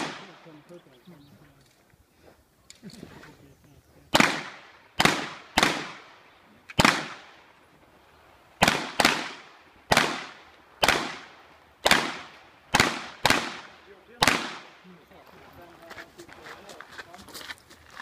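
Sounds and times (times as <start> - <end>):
pistol shots: 0.0 - 0.6, 4.1 - 7.4, 8.6 - 14.8.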